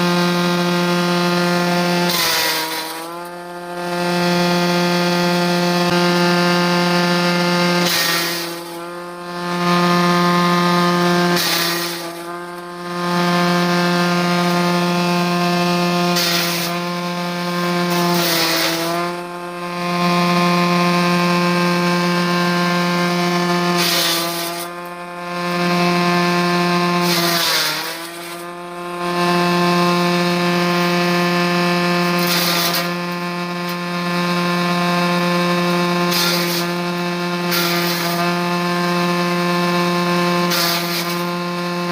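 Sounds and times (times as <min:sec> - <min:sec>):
electric motor humming: 0:00.0 - 0:41.9
harsh chopping noise: 0:01.2 - 0:19.2, 0:23.2 - 0:24.8, 0:26.9 - 0:28.5, 0:32.0 - 0:33.0, 0:35.6 - 0:36.8, 0:40.4 - 0:41.9.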